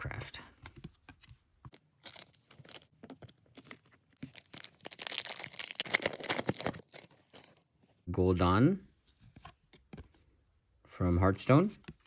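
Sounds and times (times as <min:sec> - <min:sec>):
trading cards and packaging rustling: 0:01.7 - 0:08.0.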